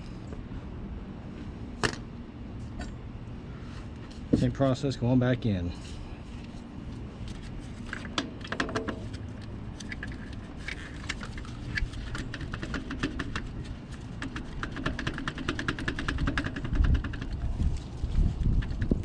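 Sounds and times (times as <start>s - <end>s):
hand ratchet clicking: 14.2s - 17.4s.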